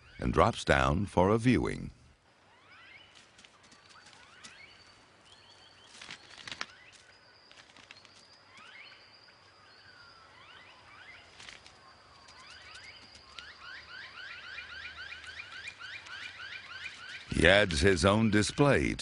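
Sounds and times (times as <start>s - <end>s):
rising bird chirps: 2.4s - 19.0s
sharp clicks and rustles: 5.9s - 8.3s.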